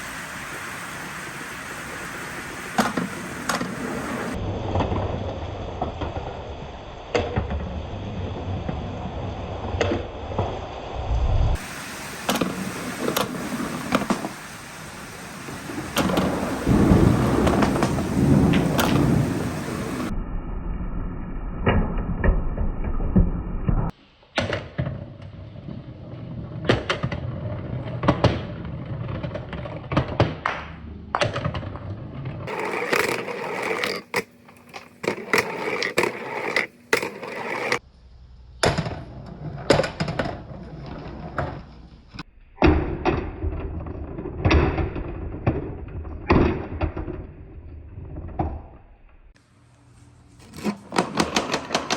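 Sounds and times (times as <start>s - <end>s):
marbles rolling on wooden tracks: 15.6s - 20.1s, 31.1s - 37.8s, 38.8s - 42.1s, 50.6s - 51.9s
marbles clicking and clacking: 32.5s - 37.8s.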